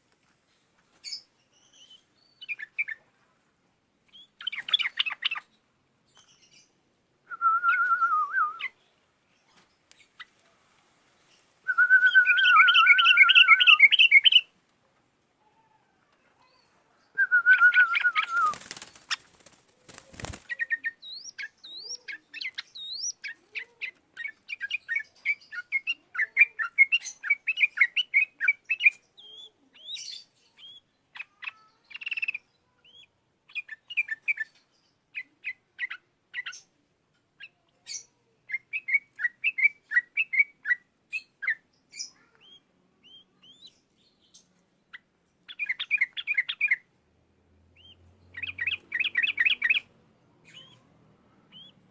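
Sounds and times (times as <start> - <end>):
bird chirping and trilling: 1.0 - 3.0, 4.1 - 6.7, 11.7 - 14.5, 16.5 - 34.6, 37.4 - 46.8, 47.8 - 50.9, 51.5 - 51.8.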